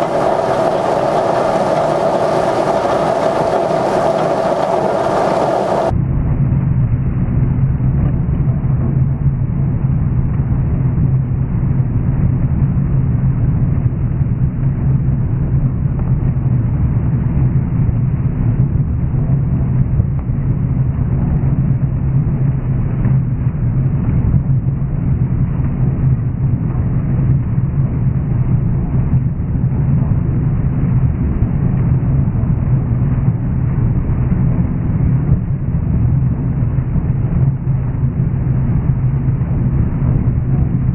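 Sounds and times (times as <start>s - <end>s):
combine diesel engine droning: 0.0s - 5.9s.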